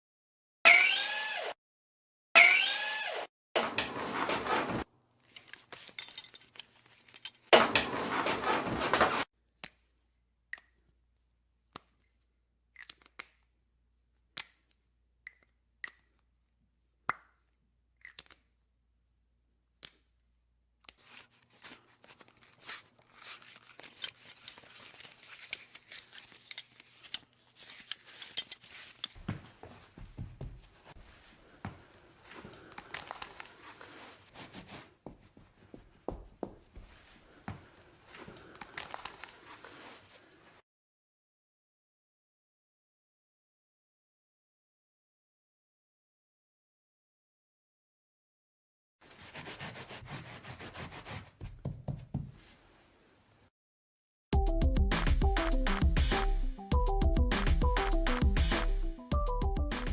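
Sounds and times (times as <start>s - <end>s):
drill driving screw into wood: 0.7s - 1.6s, 2.4s - 3.3s.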